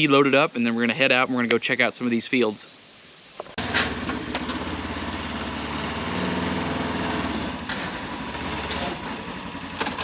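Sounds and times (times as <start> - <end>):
vehicle engine running: 3.6 - 10.0.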